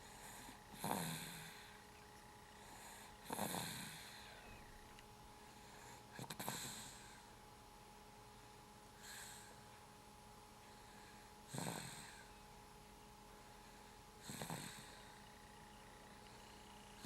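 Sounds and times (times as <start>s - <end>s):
person snoring: 0.0s - 1.8s, 2.6s - 4.4s, 6.1s - 7.2s, 11.5s - 12.3s, 14.2s - 15.3s
quiet breathing: 0.0s - 7.5s, 8.3s - 12.6s, 13.2s - 17.0s.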